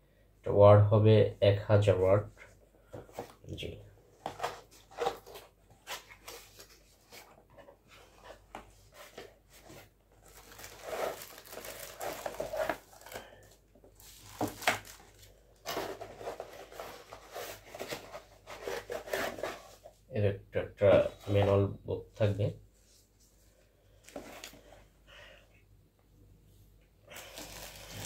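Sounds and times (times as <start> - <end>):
wrapping crinkling and rustling: 4.2 - 19.9, 27.1 - 28.0.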